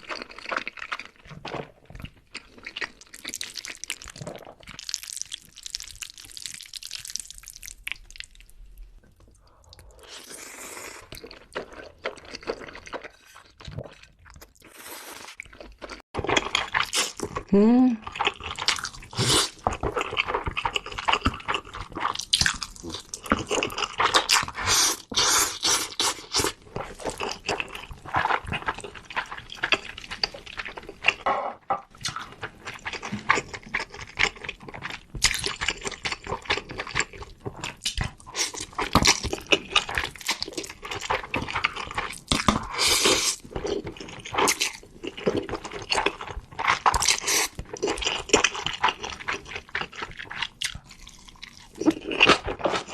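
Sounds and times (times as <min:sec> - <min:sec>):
wet slurping and chewing: 0:00.0 - 0:52.9.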